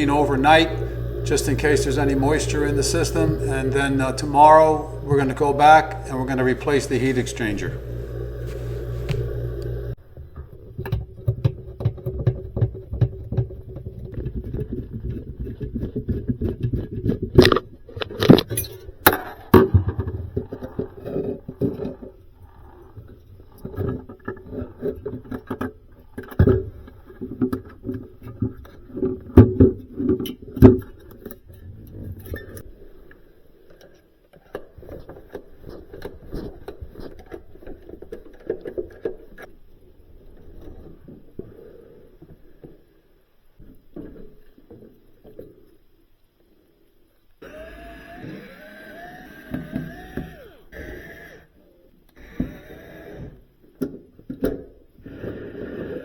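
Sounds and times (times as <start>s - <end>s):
low steady hum: 0.0s - 10.8s.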